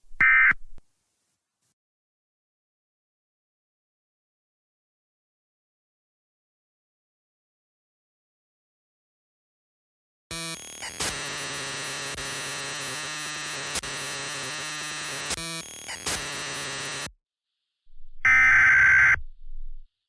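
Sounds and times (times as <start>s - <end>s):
static-like electronic noise: 10.3s - 17.2s, 18.3s - 19.2s
raspy digital data burst: 10.4s - 17.1s.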